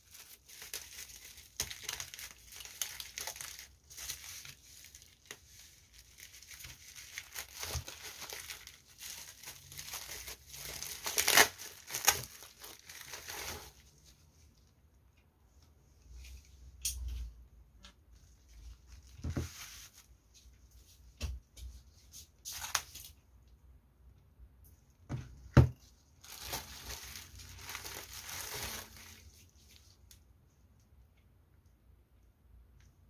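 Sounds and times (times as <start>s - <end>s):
packaging crinkling and tearing: 0.0s - 13.8s, 26.2s - 29.9s.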